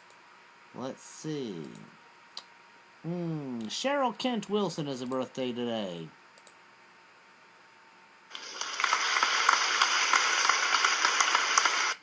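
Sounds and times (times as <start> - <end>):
applause: 8.3 - 12.0.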